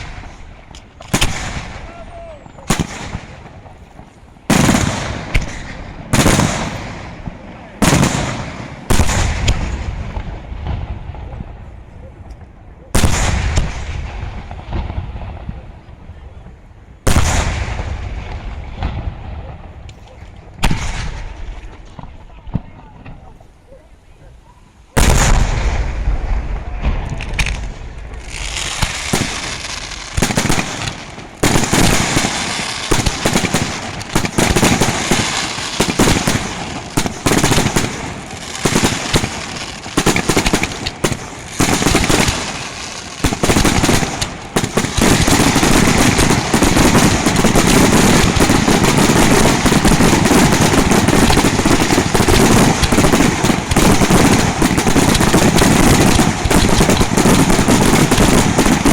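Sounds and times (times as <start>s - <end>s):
fireworks cracking and bursting: 0.0s - 23.7s, 24.9s - 58.9s
loud firework bang: 25.0s - 35.0s.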